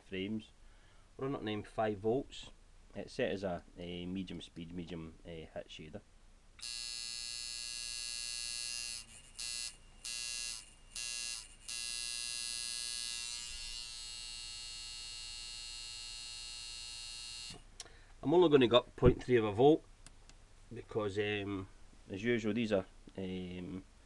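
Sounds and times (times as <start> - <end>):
tattoo machine buzzing: 6.6 - 17.6.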